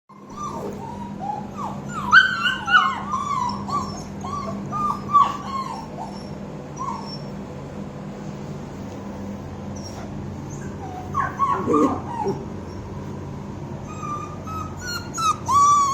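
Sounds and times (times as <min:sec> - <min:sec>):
dog whining and yipping: 0:00.1 - 0:07.4, 0:09.7 - 0:13.0, 0:13.8 - 0:15.9
steady low hum: 0:00.1 - 0:15.9.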